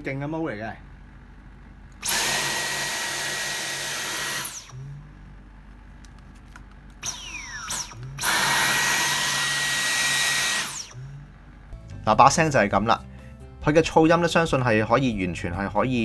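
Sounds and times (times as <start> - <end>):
vacuum cleaner whooshing and whining: 2.0 - 5.0, 7.0 - 11.1.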